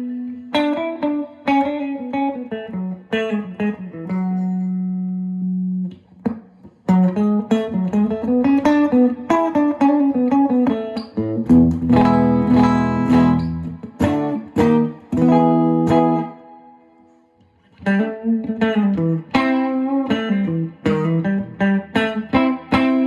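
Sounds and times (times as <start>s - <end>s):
strummed guitar chord ringing: 0.0s - 5.8s, 7.5s - 17.1s
guitar picking single notes: 0.0s - 23.0s.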